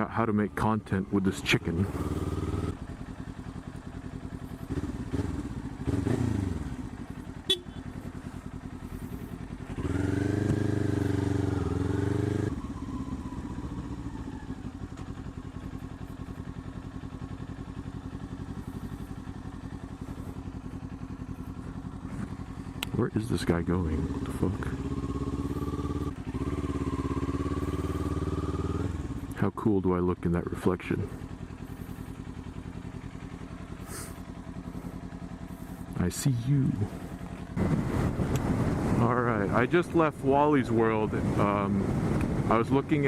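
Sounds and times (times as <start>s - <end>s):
motorcycle engine running: 0.0s - 43.0s.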